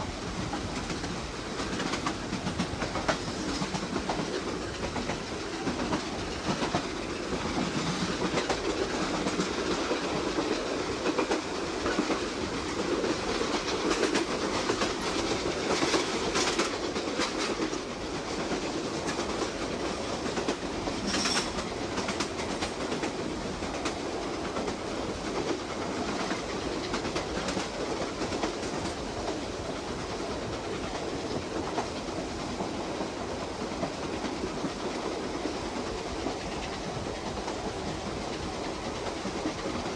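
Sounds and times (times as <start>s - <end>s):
train rumbling: 0.0s - 39.9s.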